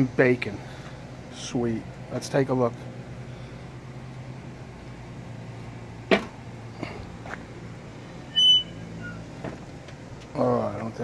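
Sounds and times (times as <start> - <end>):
short high squeak: 8.3 - 9.6.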